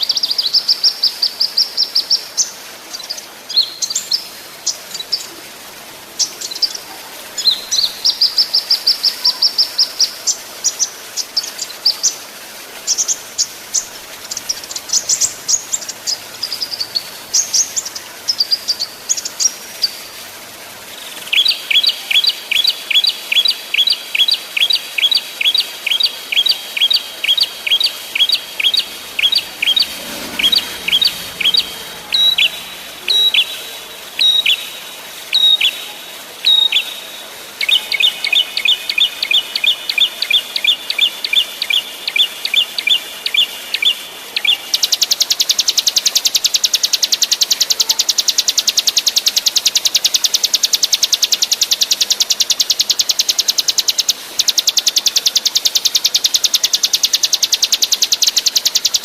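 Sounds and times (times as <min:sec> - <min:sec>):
small songbirds chirping: 0:00.0 - 0:59.0
birds' sharp falling notes: 0:26.0 - 0:35.8.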